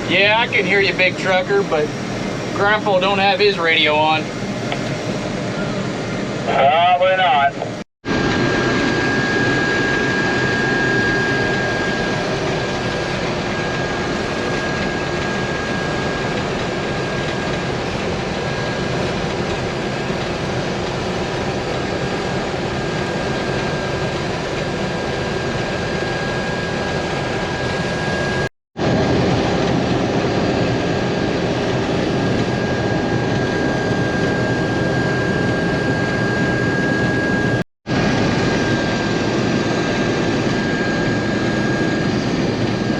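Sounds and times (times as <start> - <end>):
thin high whine: 0.0 - 17.5
combine harvester running: 0.0 - 42.9.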